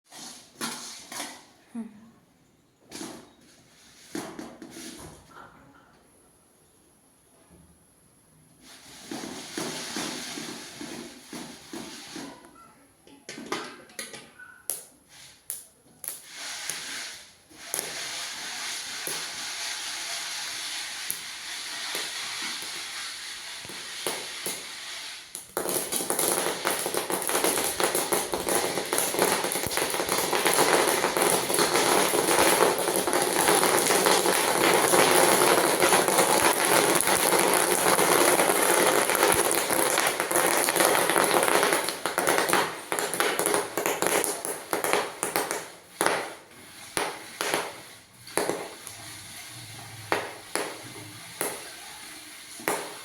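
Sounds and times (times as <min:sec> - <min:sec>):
popcorn sizzling in a pan: 0:00.1 - 0:01.8, 0:08.5 - 0:12.5, 0:14.7 - 0:53.0
kernels popping: 0:14.7 - 0:18.1, 0:21.0 - 0:49.0, 0:50.0 - 0:53.0.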